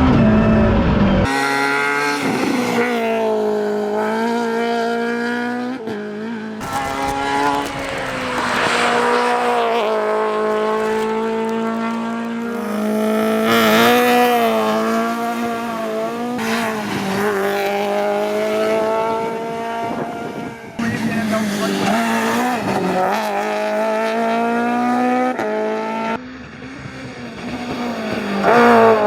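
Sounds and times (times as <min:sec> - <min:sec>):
rally car engine at high revs: 0:00.0 - 0:29.0
tyre and road noise: 0:06.4 - 0:22.8, 0:26.2 - 0:29.0.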